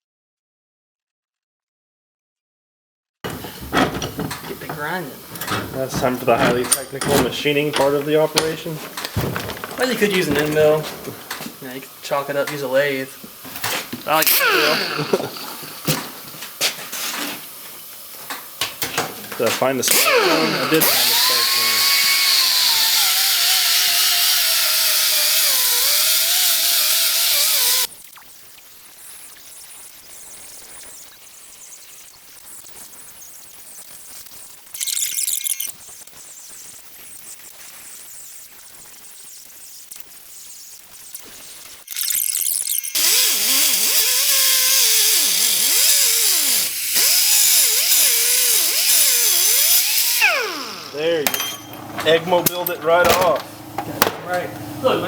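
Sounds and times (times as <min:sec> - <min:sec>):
electric grinder grinding metal: 0:03.3 - 0:18.3, 0:18.9 - 0:27.9, 0:41.1 - 0:53.3
loud hiss: 0:03.3 - 0:18.6, 0:19.2 - 0:27.9, 0:43.0 - 0:51.3.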